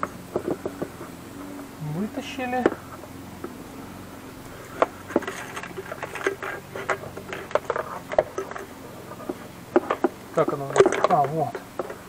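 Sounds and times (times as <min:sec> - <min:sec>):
faint steady hum: 0:00.0 - 0:12.0
plastic parts clicking and knocking: 0:04.6 - 0:12.0.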